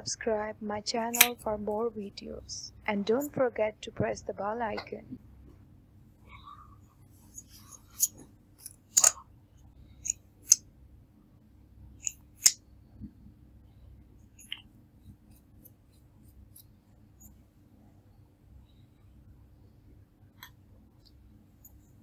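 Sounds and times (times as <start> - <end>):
faint steady hum: 0.0 - 22.0
sharp clicks and snaps: 8.0 - 9.2.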